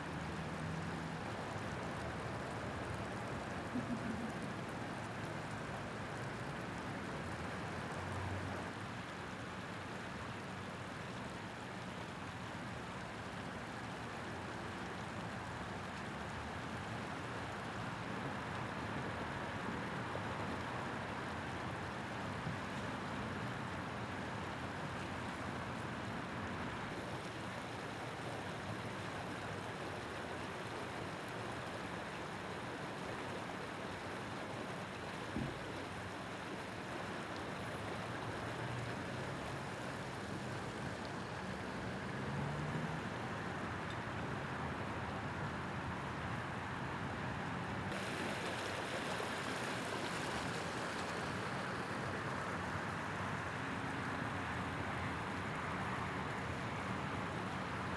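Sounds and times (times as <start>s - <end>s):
water rushing: 17.9s - 43.4s, 47.9s - 57.9s.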